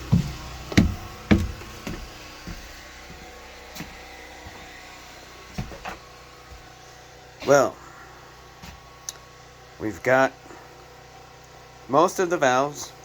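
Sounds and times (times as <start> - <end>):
dull knocks: 0.0 - 2.6.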